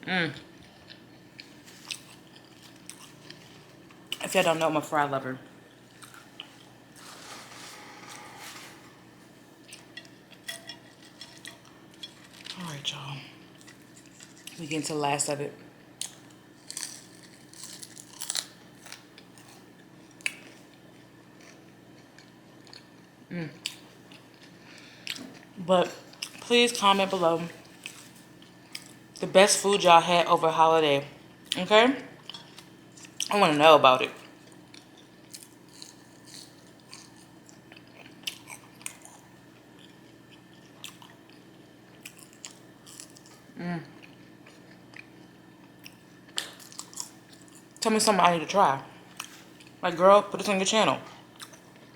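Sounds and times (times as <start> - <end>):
close chewing and crunching: 0.3 - 4.7, 5.7 - 8.9, 9.6 - 14.8, 15.6 - 29.3, 32.2 - 33.4, 34.1 - 48.2, 49.1 - 49.8, 51.1 - 51.9
crisp eating bites: 16.0 - 19.6
person humming briefly: 43.6 - 43.9.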